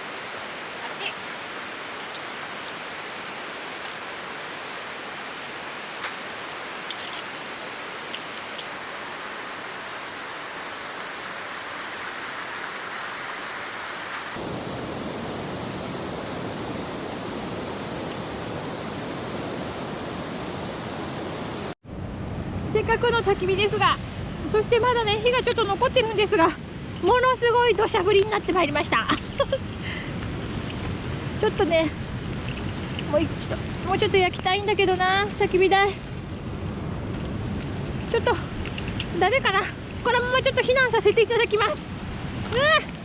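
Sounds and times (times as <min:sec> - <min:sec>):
heavy rain pouring: 0:00.0 - 0:21.8.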